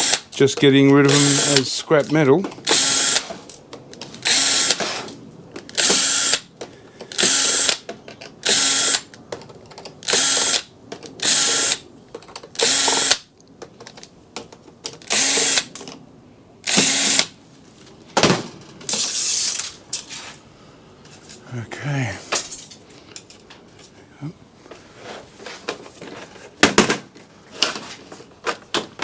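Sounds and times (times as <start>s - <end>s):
cordless drill backing out screws: 0.0s - 3.5s, 4.1s - 6.4s, 7.0s - 9.2s, 12.4s - 13.2s, 14.9s - 16.0s, 16.7s - 17.3s.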